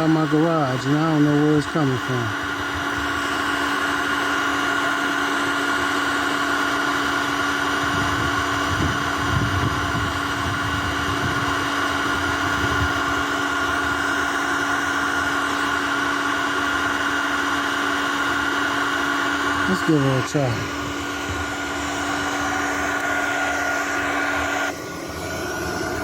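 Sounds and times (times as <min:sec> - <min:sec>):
high whine: 0:00.0 - 0:26.0
induction heater humming: 0:00.0 - 0:26.0.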